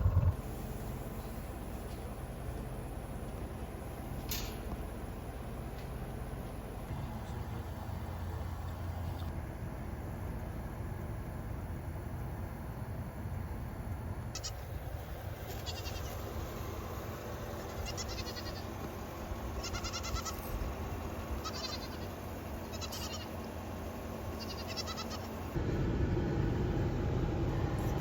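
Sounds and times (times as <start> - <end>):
low rumble: 0.0 - 1.1
goats bleating: 14.4 - 14.6, 15.5 - 16.3, 17.6 - 18.8, 19.5 - 20.6, 21.3 - 23.4, 24.3 - 25.4.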